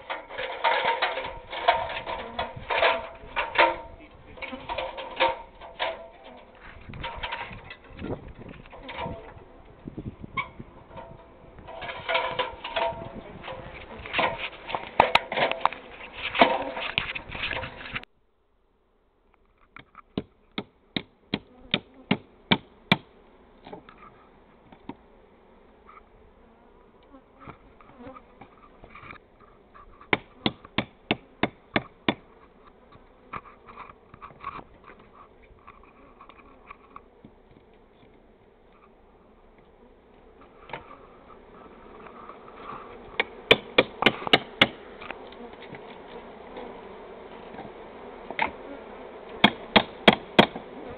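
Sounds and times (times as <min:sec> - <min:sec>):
honey bees buzzing: 0:00.0 - 0:18.1, 0:20.6 - 0:50.9
sharp knocks: 0:49.4 - 0:50.6.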